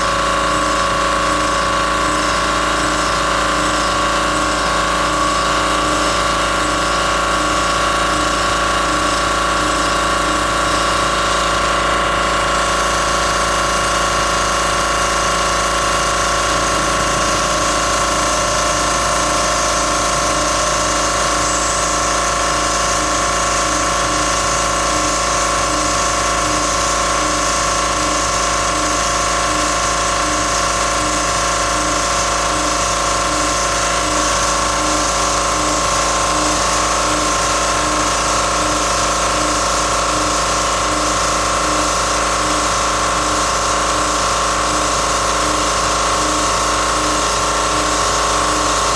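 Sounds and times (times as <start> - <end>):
router spindle whining: 0.0 - 48.9.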